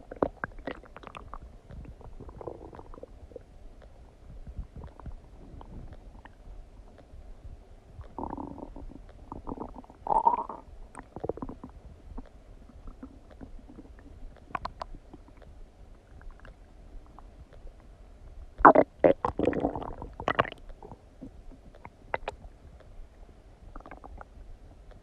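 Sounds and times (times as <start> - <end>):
stomach gurgling: 0.0 - 7.1, 7.9 - 22.9, 23.7 - 25.0
small stomach pops and clicks: 0.1 - 3.1, 3.8 - 6.4, 8.0 - 16.6, 18.6 - 22.9, 23.8 - 24.3.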